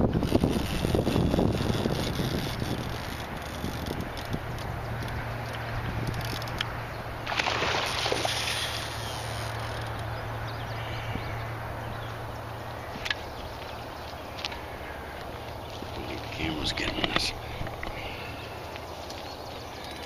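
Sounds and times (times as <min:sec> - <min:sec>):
steady low hum: 0:00.0 - 0:20.0
fish splashing in water: 0:07.2 - 0:10.0.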